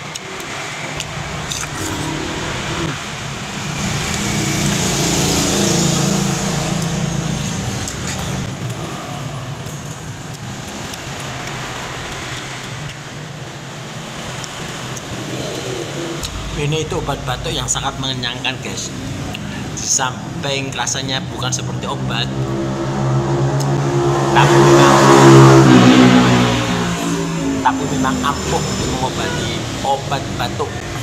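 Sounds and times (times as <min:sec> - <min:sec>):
motor vehicle passing by: 0:01.0 - 0:09.6, 0:21.8 - 0:30.0.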